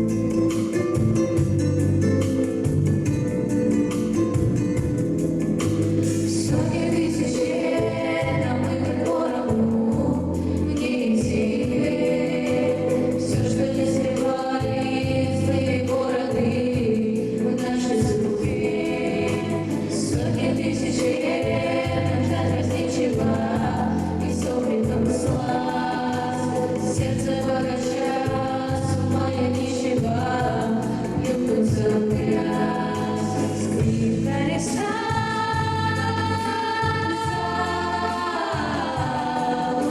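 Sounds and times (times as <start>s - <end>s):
instrumental accompaniment with bass: 0.0s - 39.9s
choir singing: 6.0s - 39.9s.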